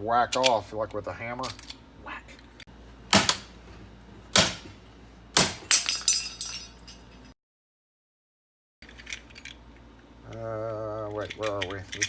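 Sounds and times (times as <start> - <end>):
metallic clinks of lock parts: 1.4 - 1.8, 11.1 - 12.0
sharp metal knocks: 3.1 - 3.5, 4.3 - 4.8, 5.4 - 6.1.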